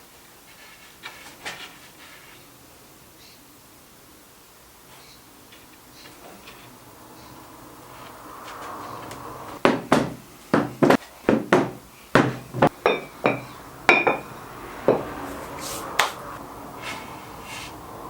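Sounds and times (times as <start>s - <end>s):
sharp knocks on wood: 9.6s - 14.3s.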